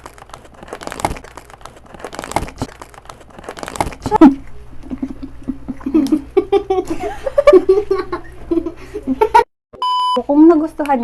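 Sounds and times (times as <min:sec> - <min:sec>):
plastic packaging crinkling: 0:00.0 - 0:04.2.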